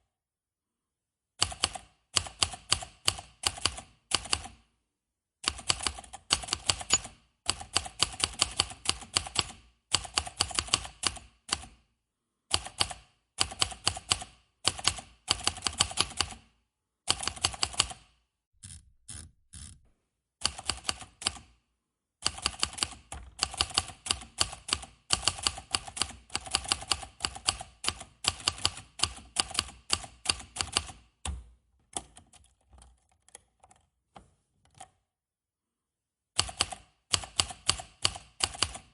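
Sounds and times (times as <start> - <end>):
typewriter key strikes: 6.8 - 7.1.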